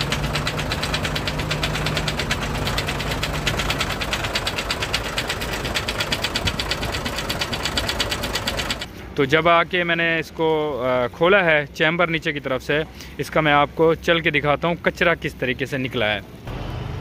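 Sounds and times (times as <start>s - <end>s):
diesel truck engine knocking: 0.0s - 8.9s.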